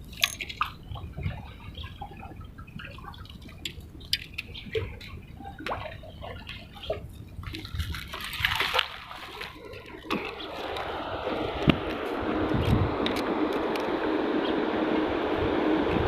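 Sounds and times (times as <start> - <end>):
small splashes and clicks: 0.0 - 10.9
water sloshing and dripping: 0.0 - 12.2.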